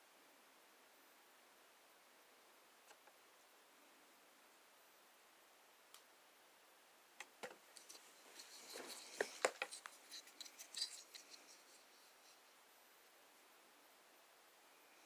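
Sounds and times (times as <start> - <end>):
metal and nylon parts scraping: 7.8 - 12.4.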